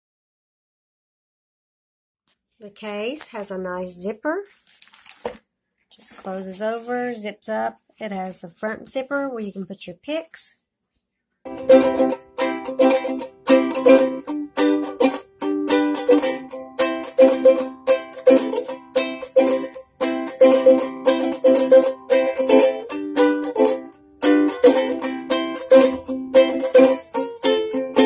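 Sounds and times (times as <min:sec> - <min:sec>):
ukulele strummed chords: 0:11.5 - 0:28.0.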